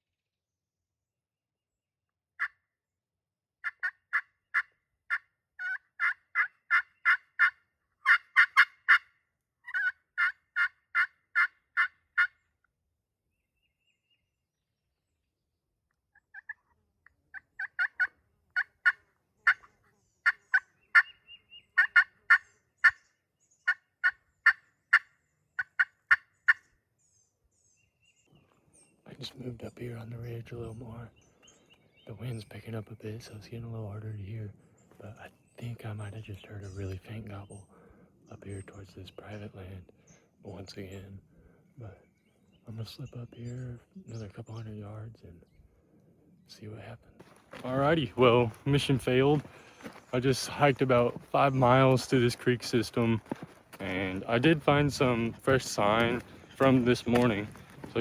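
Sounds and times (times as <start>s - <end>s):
turkey call hen yelps: 3.6s - 12.4s, 16.1s - 23.0s, 23.6s - 26.6s.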